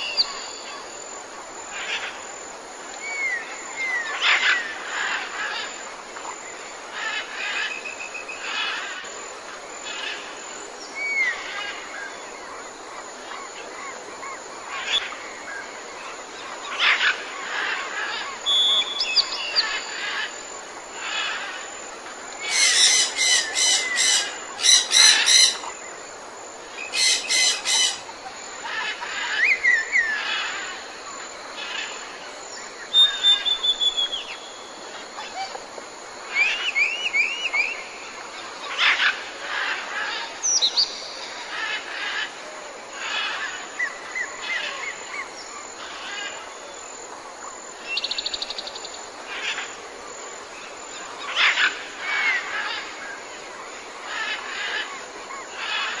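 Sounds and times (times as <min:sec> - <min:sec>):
steady background hiss: 0:00.0 - 0:56.0
birds chirping and trilling: 0:09.8 - 0:35.6.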